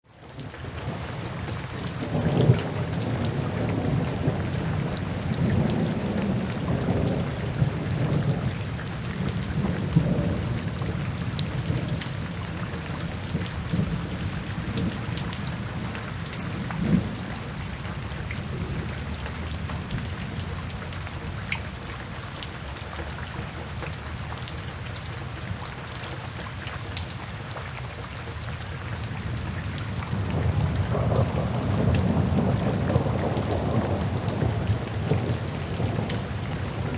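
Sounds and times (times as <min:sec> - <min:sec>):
steady rain: 0:00.0 - 0:36.9
distant thunder rumble: 0:01.2 - 0:21.4, 0:29.2 - 0:36.9.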